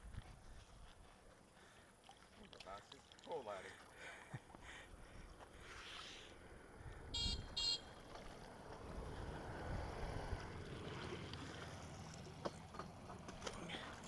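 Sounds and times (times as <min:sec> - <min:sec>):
wind rumbling on microphone: 0:08.8 - 0:10.9.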